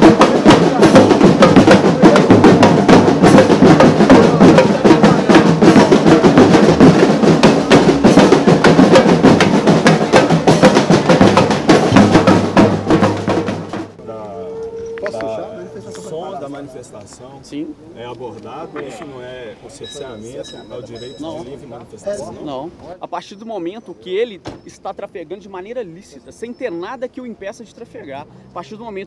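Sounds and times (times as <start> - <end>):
loud drum and percussion music: 0.0 - 16.9, 19.7 - 22.6.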